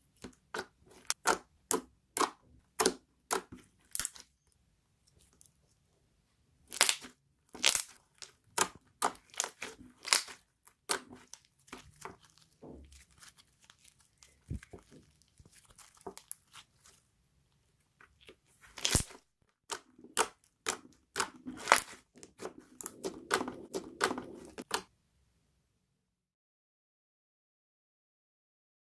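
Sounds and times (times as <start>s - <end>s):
slime crackling and popping: 0.5s - 4.2s, 6.7s - 17.0s, 18.2s - 24.8s.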